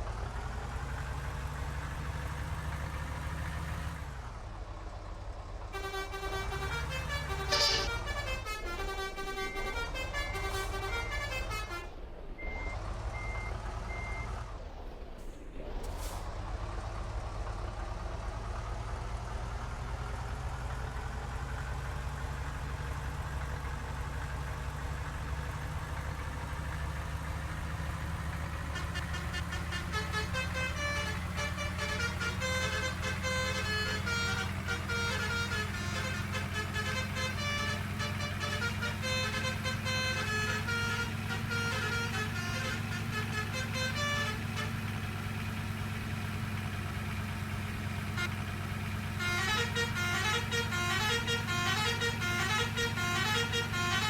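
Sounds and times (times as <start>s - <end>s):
bus engine humming: 0.0s - 54.0s
multi-tone bus horn melody: 5.7s - 12.6s, 25.9s - 54.0s.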